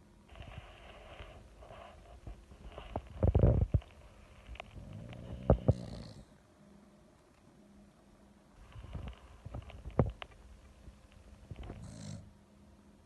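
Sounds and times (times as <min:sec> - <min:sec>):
dog snoring: 0:04.8 - 0:06.4, 0:11.6 - 0:12.3.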